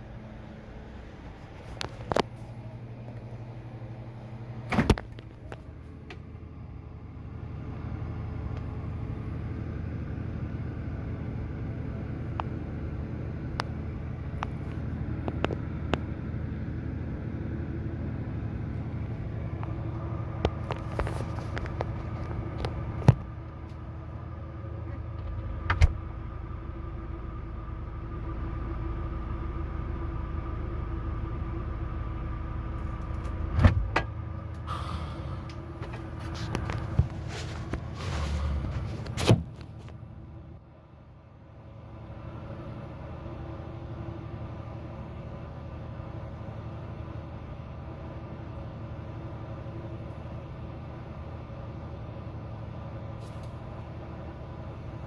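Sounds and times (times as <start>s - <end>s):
motor vehicle rumbling: 0.0s - 40.8s
sharp clicks and knocks: 25.2s - 26.0s.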